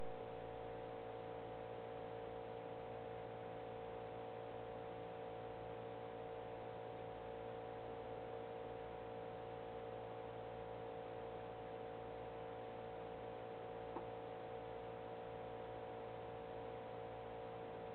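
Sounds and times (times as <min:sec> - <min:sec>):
steady electrical hum: 0:00.0 - 0:17.9.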